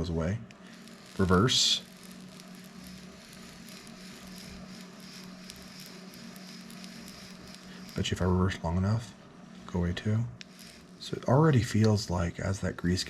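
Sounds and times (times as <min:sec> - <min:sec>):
fishing reel gears crackling: 0:00.6 - 0:08.2, 0:10.4 - 0:11.6.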